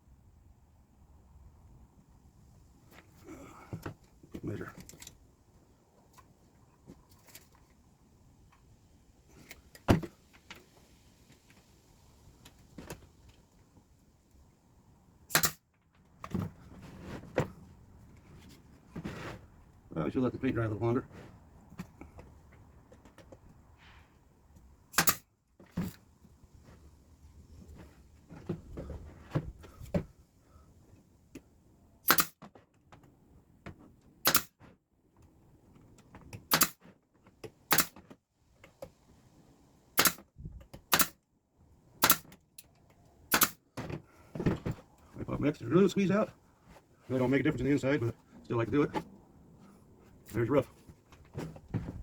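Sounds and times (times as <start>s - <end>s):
brad nailer firing into wood: 15.3s - 15.6s, 24.9s - 25.2s, 32.0s - 32.4s, 34.2s - 34.6s, 36.5s - 36.8s, 37.7s - 38.0s, 40.0s - 40.2s, 40.9s - 41.2s, 42.0s - 42.4s, 43.3s - 43.6s
handling knocks: 51.2s - 52.0s.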